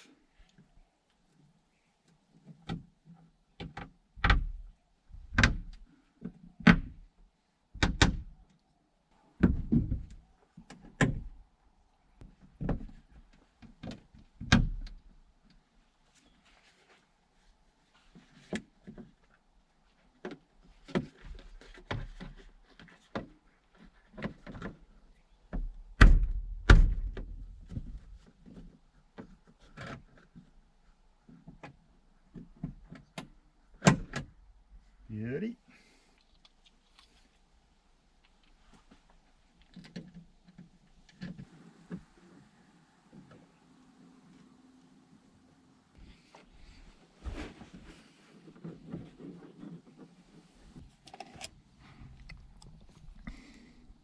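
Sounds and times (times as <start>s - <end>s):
rustling: 15.6s - 20.1s, 35.8s - 54.0s.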